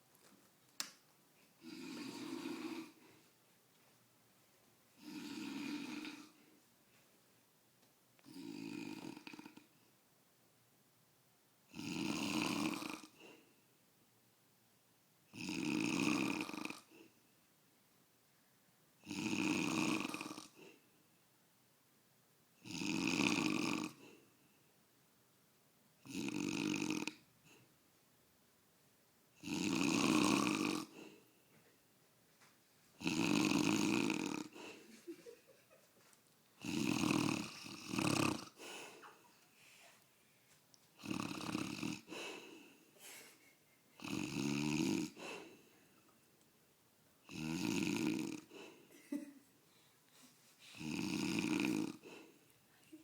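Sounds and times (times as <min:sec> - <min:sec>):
quiet breaths: 0:00.0 - 0:07.6, 0:12.0 - 0:13.9, 0:15.5 - 0:17.6, 0:18.3 - 0:21.4, 0:22.9 - 0:25.0, 0:26.1 - 0:28.1, 0:29.3 - 0:53.0
man snoring loudly: 0:01.6 - 0:03.0, 0:05.0 - 0:06.4, 0:08.3 - 0:09.6, 0:11.7 - 0:13.1, 0:15.4 - 0:16.9, 0:19.0 - 0:20.6, 0:22.6 - 0:24.0, 0:26.1 - 0:27.2, 0:29.4 - 0:30.9, 0:33.0 - 0:34.7, 0:36.6 - 0:38.6, 0:41.0 - 0:42.1, 0:44.0 - 0:45.5, 0:47.3 - 0:48.5, 0:50.8 - 0:52.2.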